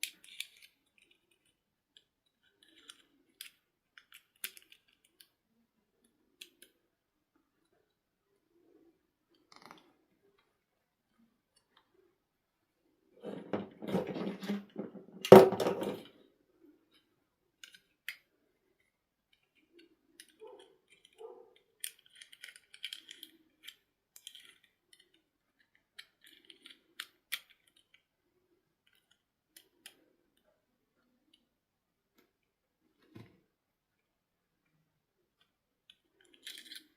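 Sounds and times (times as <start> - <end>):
rustling of small objects: 35.9 - 36.9.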